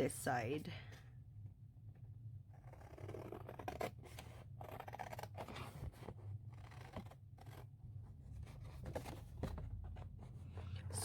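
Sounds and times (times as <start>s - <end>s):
scissors cutting paper: 2.6s - 4.0s, 4.6s - 5.7s.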